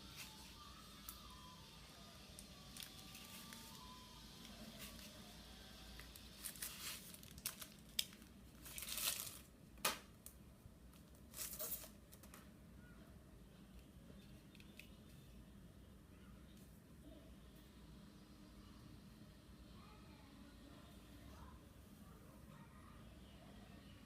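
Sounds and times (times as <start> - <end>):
faint room noise: 0.0 - 24.0
packaging rustling and tearing: 2.4 - 5.2, 5.9 - 9.5, 11.2 - 12.0.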